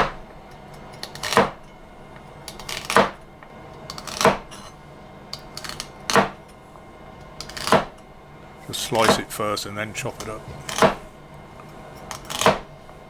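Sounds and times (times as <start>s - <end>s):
knife cutting celery on board: 1.1s - 1.6s, 2.5s - 3.2s, 3.9s - 4.5s, 5.4s - 6.4s, 7.4s - 7.9s, 10.4s - 11.1s, 12.1s - 12.6s.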